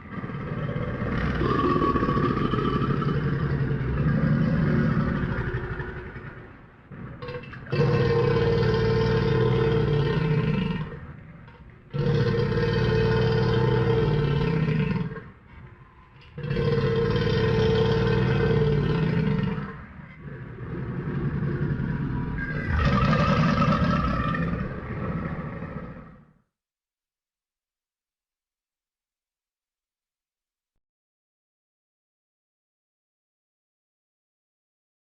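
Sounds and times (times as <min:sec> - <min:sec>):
crocodile growling: 0:00.0 - 0:11.2, 0:11.9 - 0:15.4, 0:16.3 - 0:26.4.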